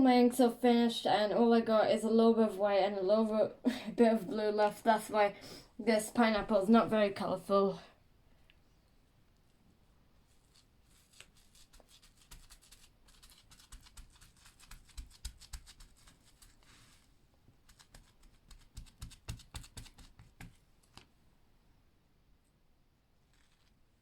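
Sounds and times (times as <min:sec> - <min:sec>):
paper rustle: 0:23.2 - 0:23.9.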